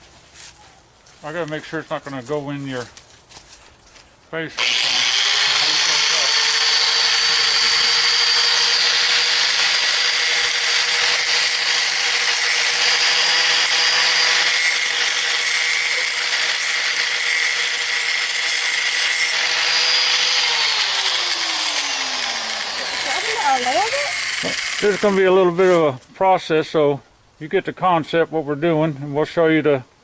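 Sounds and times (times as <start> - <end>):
grinder motor spinning down: 4.6 - 25.2
electric grinder grinding steel: 4.6 - 25.3.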